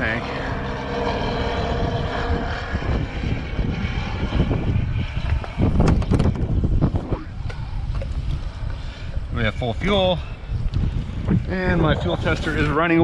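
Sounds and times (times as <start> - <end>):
propeller airplane engine droning: 0.0 - 13.0
wind buffeting microphone: 0.0 - 13.0.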